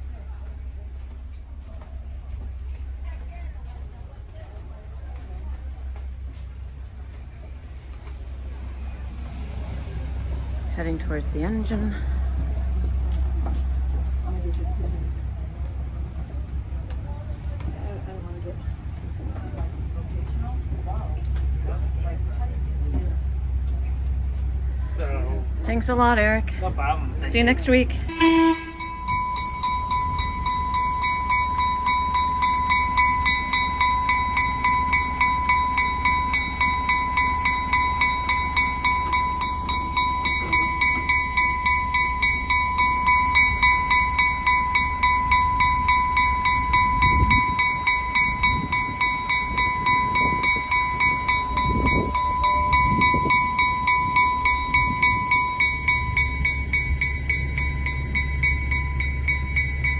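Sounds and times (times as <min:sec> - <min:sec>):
low rumble of train: 0:00.0 - 0:59.9
locomotive bell ringing: 0:27.2 - 0:59.9.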